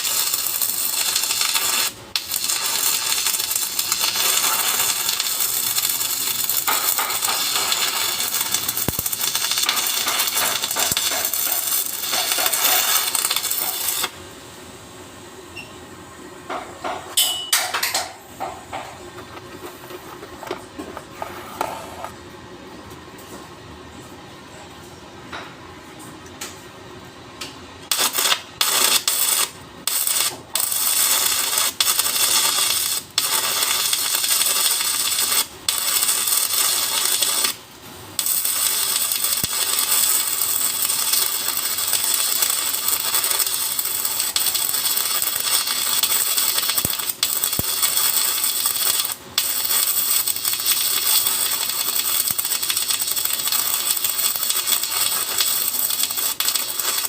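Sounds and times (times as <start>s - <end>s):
welding arc crackling and sizzling: 0.0s - 14.3s, 27.4s - 57.0s.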